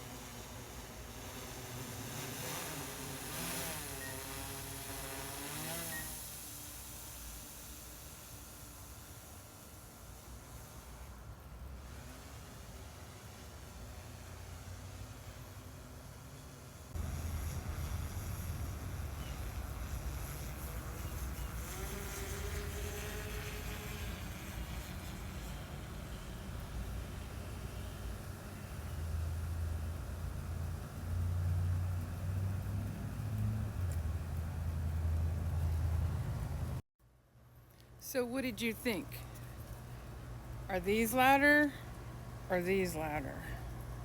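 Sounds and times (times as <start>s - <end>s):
drone propellers whirring: 0.0s - 10.9s, 16.9s - 28.8s.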